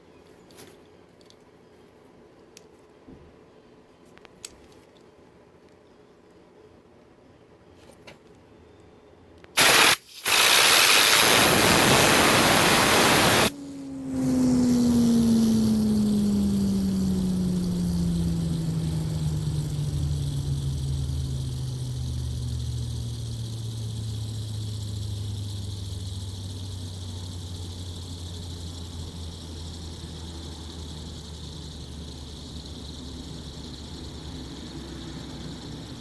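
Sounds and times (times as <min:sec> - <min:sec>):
fidget spinner humming: 0:09.6 - 0:36.0.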